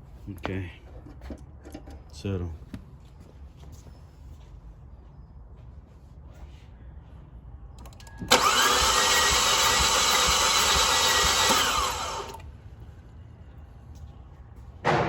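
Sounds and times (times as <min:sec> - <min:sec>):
engine cranking on starter motor: 0:07.8 - 0:12.4.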